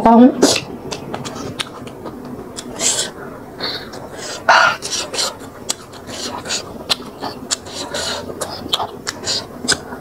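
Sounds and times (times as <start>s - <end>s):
sharp mouth clicks: 0.5s - 2.8s, 6.9s - 7.7s, 8.4s - 9.9s
lip smacks: 0.5s - 3.1s, 4.8s - 9.9s
wet chewing: 0.5s - 3.2s, 3.8s - 10.0s.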